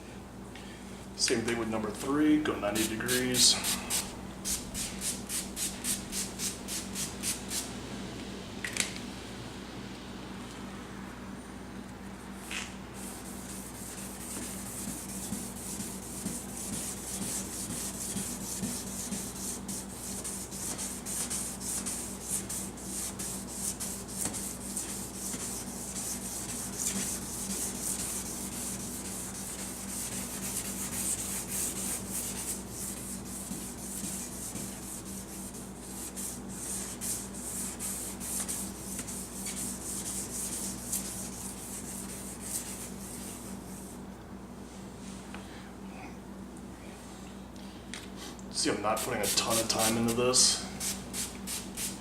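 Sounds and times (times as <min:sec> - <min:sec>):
steady low hum: 0:00.0 - 0:52.0
sanding pad rubbing plastic: 0:13.0 - 0:43.5.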